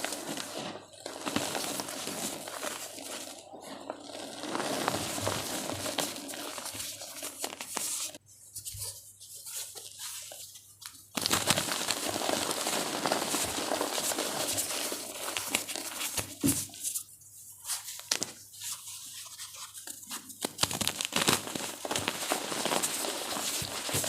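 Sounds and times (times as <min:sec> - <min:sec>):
chalk blocks crushed crackling: 0:00.0 - 0:08.2, 0:11.1 - 0:16.5, 0:20.5 - 0:24.0.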